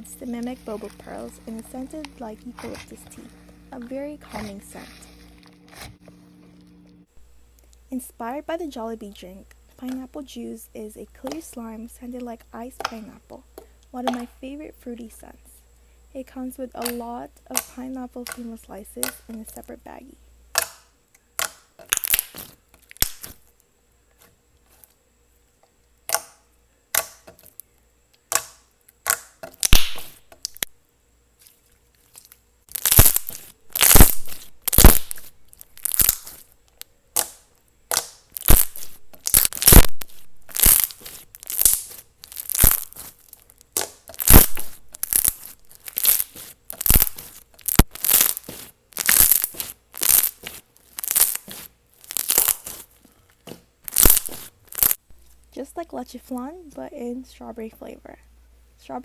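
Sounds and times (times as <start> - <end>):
slime popping and crackling: 16.8 - 19.6, 21.4 - 23.5, 28.3 - 30.7, 32.0 - 53.0, 53.8 - 55.0.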